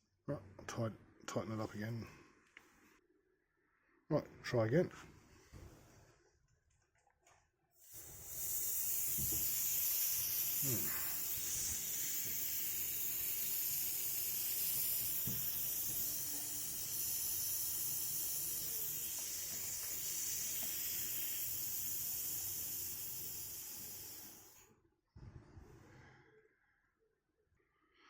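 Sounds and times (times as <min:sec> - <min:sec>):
compressed air hissing: 0:07.8 - 0:24.7.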